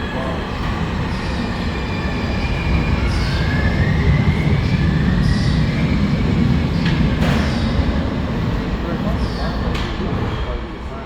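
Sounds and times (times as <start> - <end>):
subway train rumble: 0.0 - 11.0
train clatter: 5.8 - 8.2.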